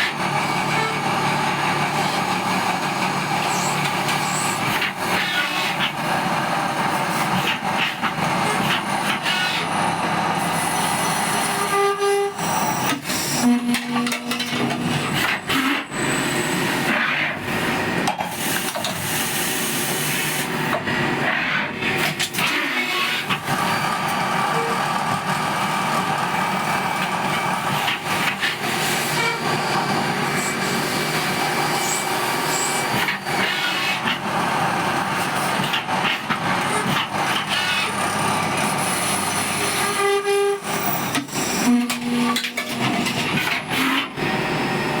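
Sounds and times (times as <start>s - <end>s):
lathe running: 23.6s - 35.6s.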